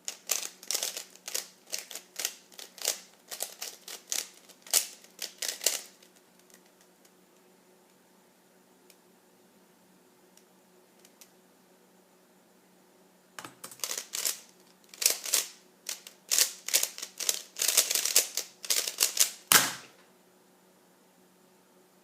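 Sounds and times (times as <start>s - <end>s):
puzzle cube plastic layers clacking: 0.0s - 6.9s, 13.4s - 19.5s
hard slap: 19.5s - 20.0s.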